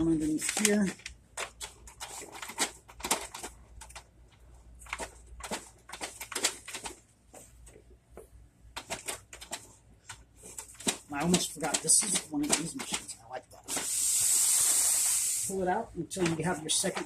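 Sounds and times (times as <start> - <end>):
printer parts clicking and tapping: 8.8 - 13.0.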